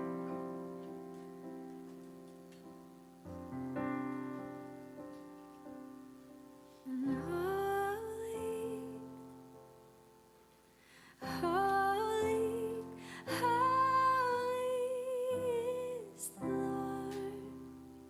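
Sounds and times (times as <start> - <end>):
woman singing: 6.9 - 9.2, 11.2 - 17.8.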